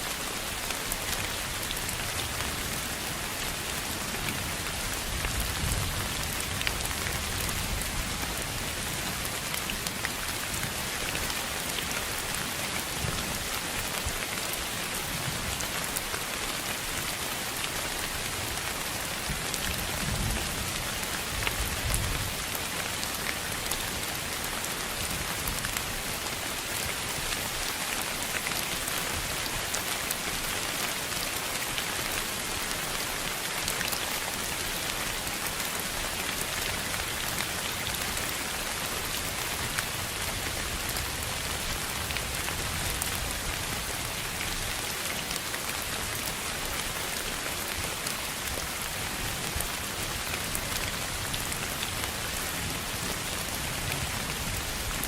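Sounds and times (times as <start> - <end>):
pink noise hiss like rain: 0.0 - 55.0.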